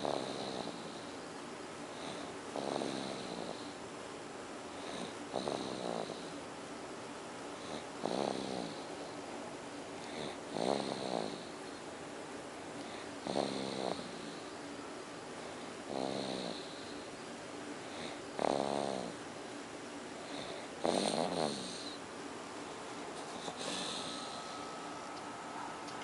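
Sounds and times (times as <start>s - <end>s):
baby snoring: 0.0s - 1.1s, 2.0s - 3.8s, 4.8s - 6.3s, 7.6s - 9.1s, 10.0s - 11.6s, 12.9s - 14.5s, 15.9s - 16.9s, 17.9s - 19.2s, 20.2s - 22.0s, 23.2s - 26.0s.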